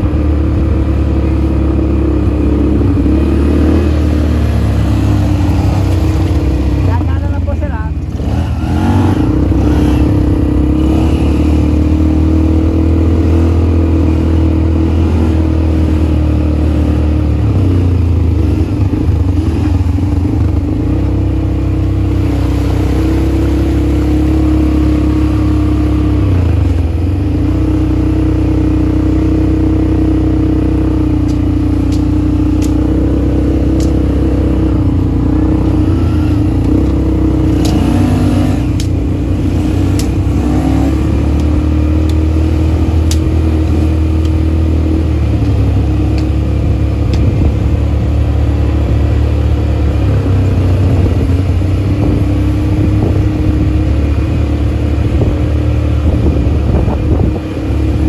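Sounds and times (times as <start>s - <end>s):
atv engine running: 0.0s - 58.0s.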